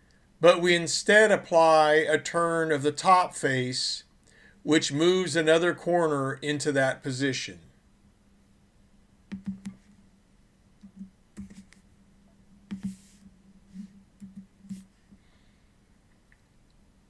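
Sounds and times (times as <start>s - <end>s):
brief scrape: 12.8s - 14.0s.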